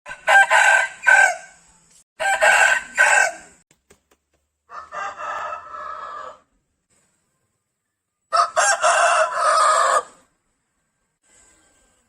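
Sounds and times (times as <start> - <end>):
rooster crowing: 0.1 - 1.5, 2.2 - 3.5, 4.7 - 6.5, 8.3 - 10.2.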